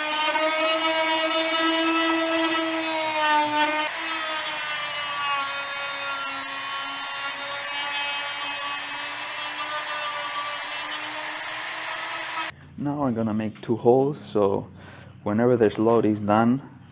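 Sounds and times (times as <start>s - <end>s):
rotary tool sanding plastic: 0.0s - 12.5s.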